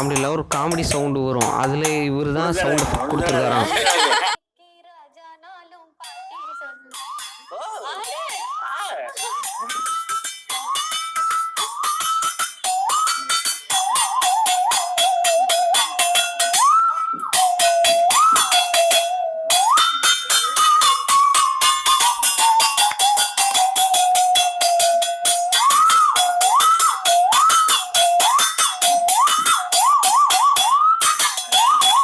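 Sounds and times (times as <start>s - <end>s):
swooping whistle-like tone: 8.4s - 32.0s.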